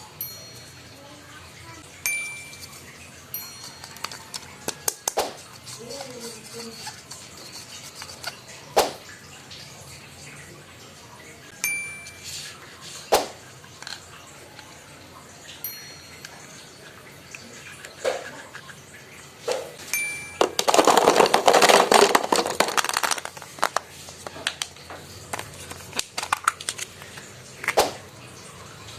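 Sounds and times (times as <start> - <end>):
bright chime ringing: 0.0 - 4.4, 11.5 - 12.6, 15.6 - 17.2, 19.8 - 20.8
plastic toys knocking and clicking: 3.4 - 9.1, 19.4 - 28.0.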